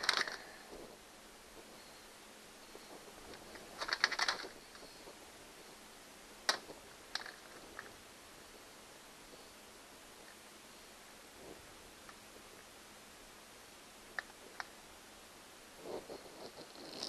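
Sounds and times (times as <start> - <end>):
plastic rivets clicking and rattling: 0.0 - 0.5, 3.3 - 4.9, 6.5 - 7.9.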